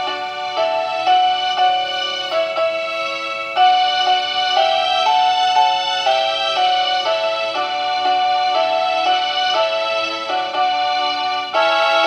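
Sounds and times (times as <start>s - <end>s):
electronic ringtone melody: 11.2s - 12.0s.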